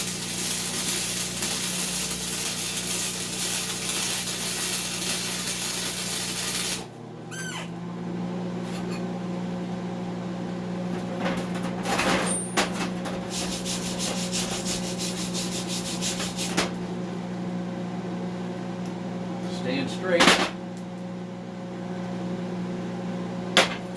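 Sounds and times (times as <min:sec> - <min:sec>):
welder arc crackling: 0:00.0 - 0:07.0, 0:13.3 - 0:16.6
steady electrical hum: 0:00.0 - 0:07.6, 0:12.9 - 0:18.0.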